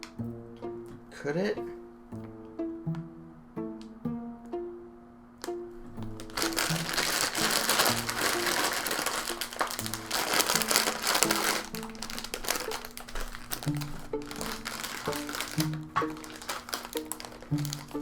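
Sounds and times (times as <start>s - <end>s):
plucked-string background music: 0.0s - 18.0s
chip bag crinkling: 6.1s - 18.0s.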